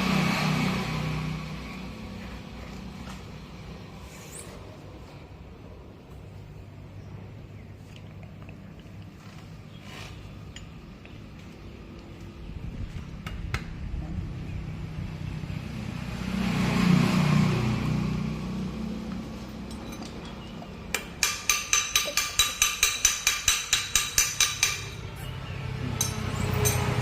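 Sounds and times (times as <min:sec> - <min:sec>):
ringing hammer blows on metal: 0:20.9 - 0:25.1.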